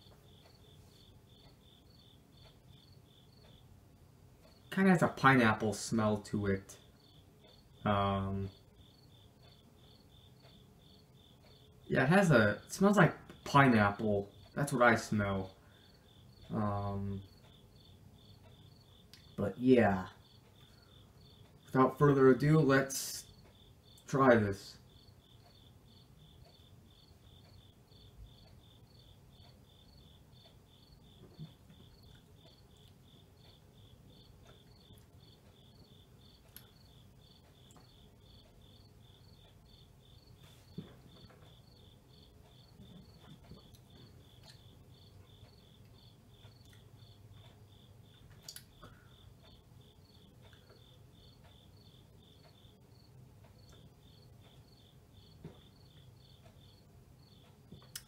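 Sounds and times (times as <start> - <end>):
soft clicks: 45.4 - 49.6.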